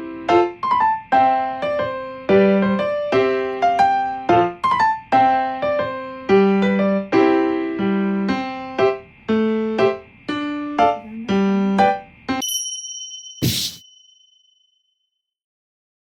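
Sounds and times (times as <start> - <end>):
electric piano melody: 0.0 - 12.4.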